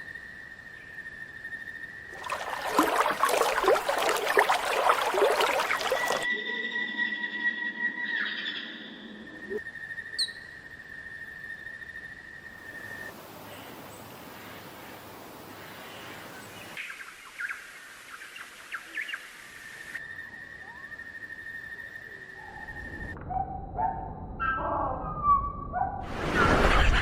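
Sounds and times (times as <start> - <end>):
rising calls: 2.2 - 6.3.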